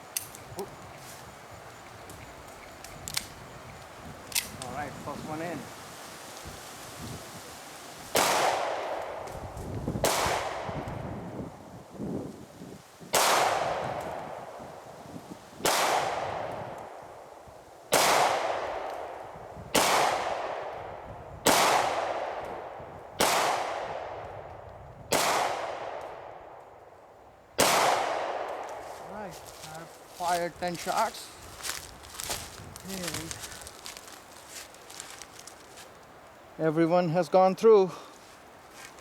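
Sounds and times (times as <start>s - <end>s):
pistol shots with echo: 8.1s - 9.2s, 10.0s - 10.8s, 13.1s - 14.4s, 15.6s - 16.5s, 17.9s - 18.8s, 19.7s - 20.7s, 21.4s - 24.2s, 25.1s - 26.2s, 27.6s - 28.6s.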